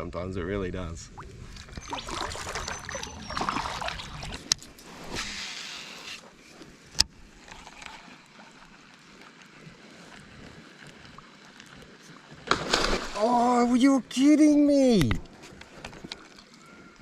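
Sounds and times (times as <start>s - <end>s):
water sloshing around a kayak: 1.1s - 13.4s.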